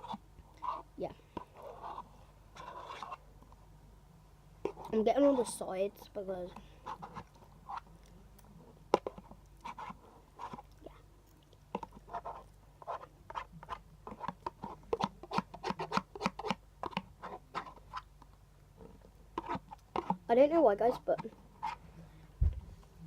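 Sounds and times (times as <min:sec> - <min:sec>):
food scraped from a box: 0:00.0 - 0:03.2.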